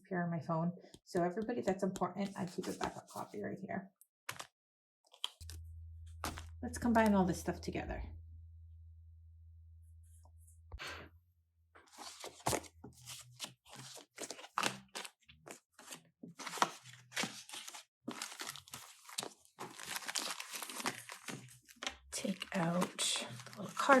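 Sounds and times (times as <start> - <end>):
packaging crinkling: 16.5 - 24.0.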